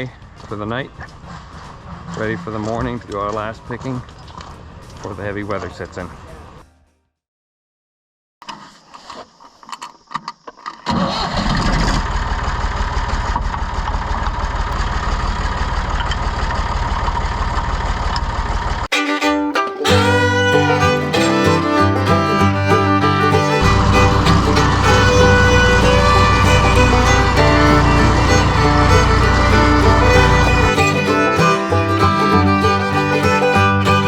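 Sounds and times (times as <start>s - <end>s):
fiddle music: 18.9s - 34.0s
engine running: 19.8s - 34.0s.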